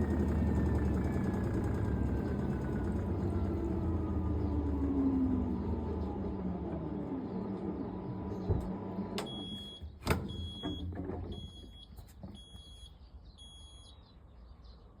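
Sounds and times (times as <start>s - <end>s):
washing machine hum: 0.0s - 11.8s
short high beeps: 11.4s - 14.0s.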